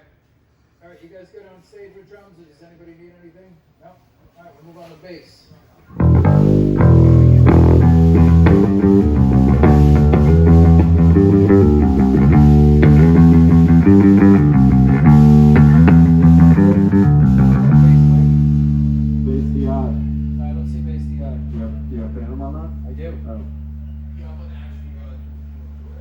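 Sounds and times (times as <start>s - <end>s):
electric bass guitar plucked notes: 5.9s - 25.9s.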